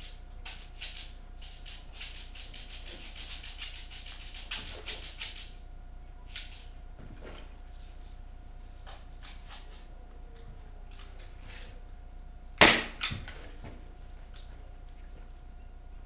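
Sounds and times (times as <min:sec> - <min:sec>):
airsoft gun shots: 0:12.6 - 0:13.1.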